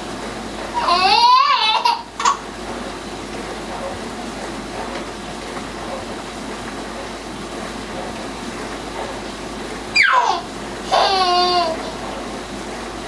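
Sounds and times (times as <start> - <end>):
baby squealing: 10.0 - 11.8.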